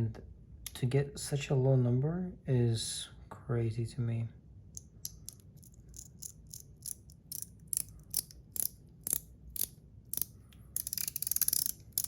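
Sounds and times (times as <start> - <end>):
metal fidget toy clicking: 4.8 - 12.0.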